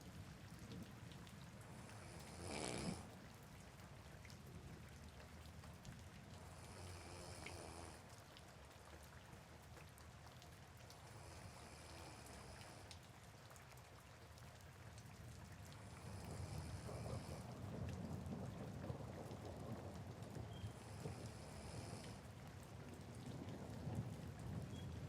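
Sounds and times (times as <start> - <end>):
soft rain hissing: 0.0 - 25.0
person snoring softly: 1.7 - 3.1, 6.5 - 8.0, 11.1 - 12.9, 15.8 - 17.5, 20.8 - 22.3.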